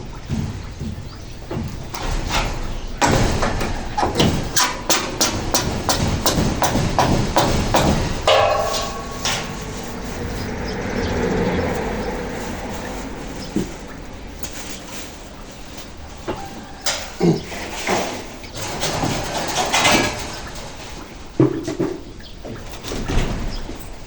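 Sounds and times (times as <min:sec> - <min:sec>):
hammer blows: 0:00.0 - 0:12.1.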